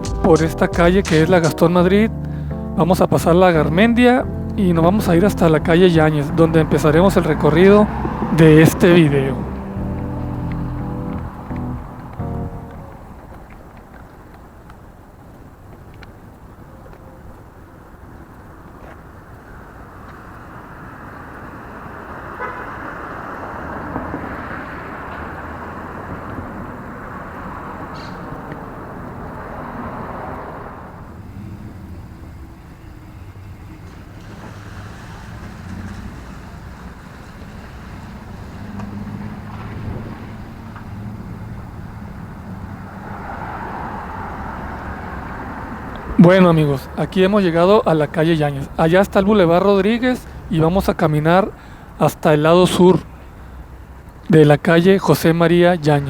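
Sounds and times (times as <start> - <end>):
cars driving past: 0.0 - 15.3, 18.0 - 56.0
low engine running: 1.8 - 13.2.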